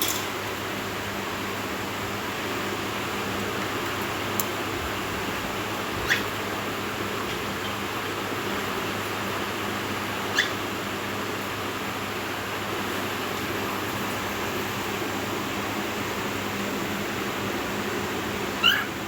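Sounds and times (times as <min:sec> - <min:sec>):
cockatiel chirping: 0:06.1 - 0:06.3, 0:10.3 - 0:10.6, 0:18.6 - 0:18.9.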